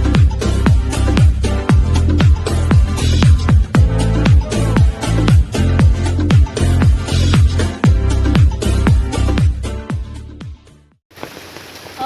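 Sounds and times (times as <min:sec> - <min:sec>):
electronic dance music: 0:00.0 - 0:09.6
deep bass line: 0:00.0 - 0:10.8
kick drum: 0:00.2 - 0:10.6.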